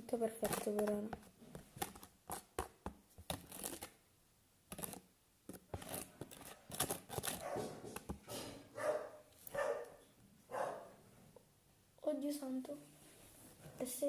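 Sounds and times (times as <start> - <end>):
rustling: 4.7 - 11.3.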